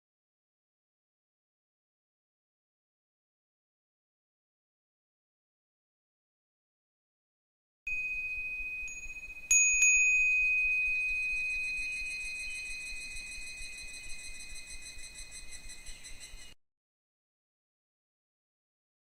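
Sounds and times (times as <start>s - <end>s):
wind bell ringing: 7.9s - 16.1s.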